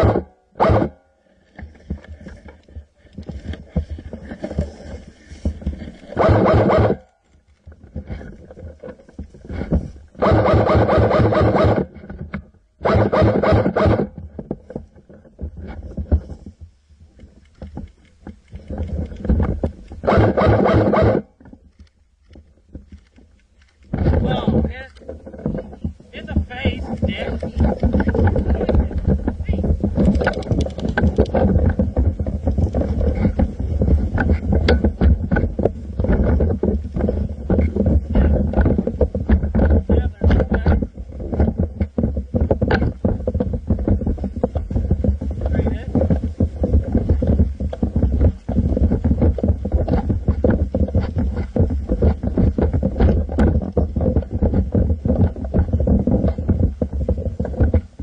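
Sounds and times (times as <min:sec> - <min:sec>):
handling scrapes and knocks: 0:00.0 - 0:58.0
heavy low rumble: 0:23.9 - 0:58.0.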